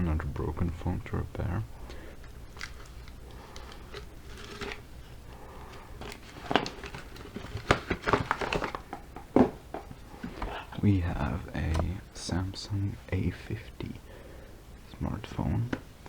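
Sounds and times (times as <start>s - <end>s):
packaging crinkling and rustling: 1.8s - 10.7s.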